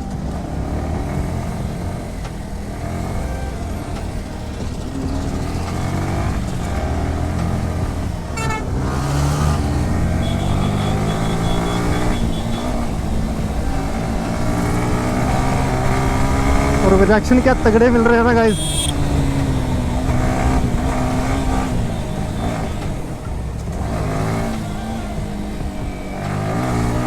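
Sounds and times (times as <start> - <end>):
motorcycle engine revving: 0.0 - 27.0
road traffic: 0.0 - 27.0
high steady beeping tone: 2.0 - 8.7, 9.6 - 23.5.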